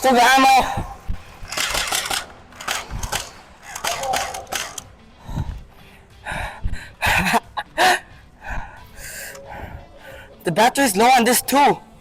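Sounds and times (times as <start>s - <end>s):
toy blaster clicks and rattles: 1.4s - 4.9s.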